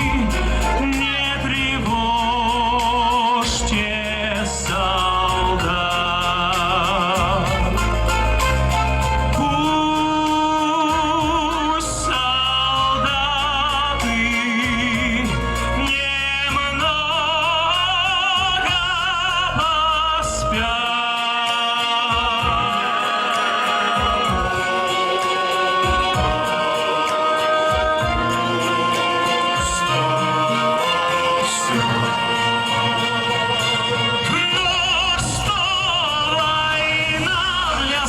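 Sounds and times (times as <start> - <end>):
band accompaniment: 0.0 - 38.0
man singing with vibrato: 0.0 - 38.0.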